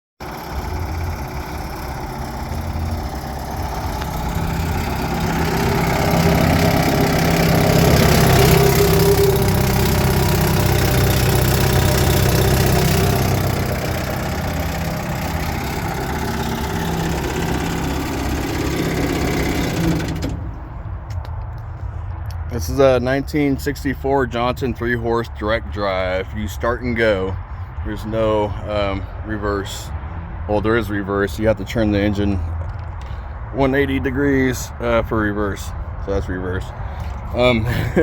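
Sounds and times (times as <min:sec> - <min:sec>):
outboard motor running: 0:00.2 - 0:21.2.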